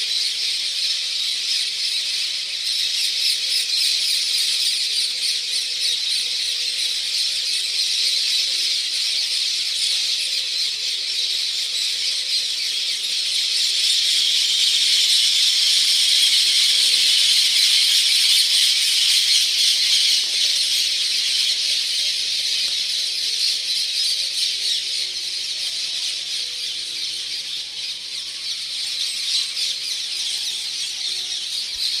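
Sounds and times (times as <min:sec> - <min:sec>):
parakeets screeching: 0:12.6 - 0:24.9.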